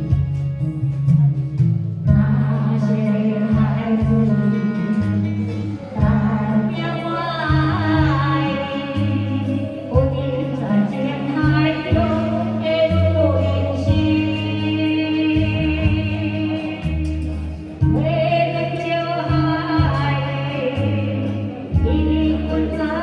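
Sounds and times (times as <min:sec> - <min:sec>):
bass line: 0:00.0 - 0:23.0
instrumental backing: 0:00.0 - 0:23.0
person singing with vibrato: 0:00.0 - 0:23.0.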